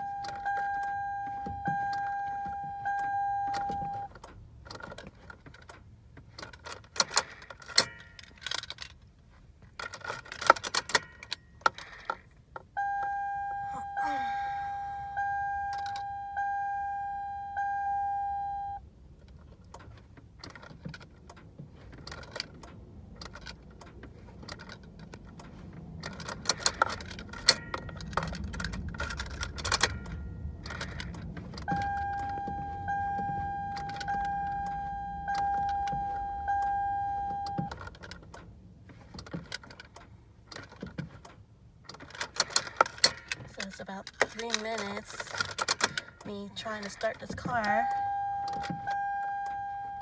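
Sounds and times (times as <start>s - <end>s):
car key-reminder chime dinging: 0.0s - 4.2s, 7.6s - 8.5s, 10.8s - 11.7s, 12.7s - 18.9s, 26.5s - 37.8s, 42.9s - 50.0s
keys jangling in ignition: 0.1s - 12.5s, 19.2s - 50.0s.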